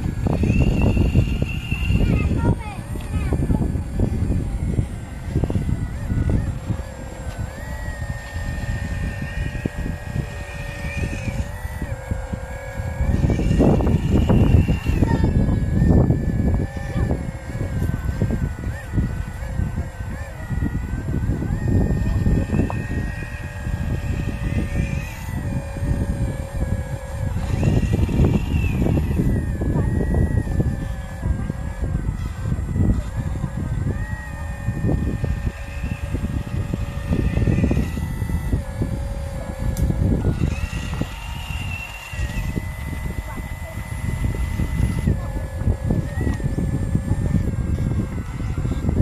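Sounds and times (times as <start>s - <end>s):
electric motor and gear whine: 0.0s - 49.0s.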